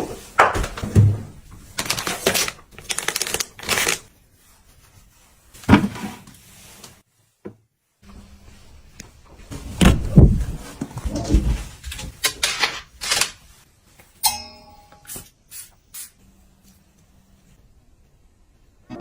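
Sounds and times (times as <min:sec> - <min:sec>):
rustling and handling noises: 0:00.0 - 0:14.2.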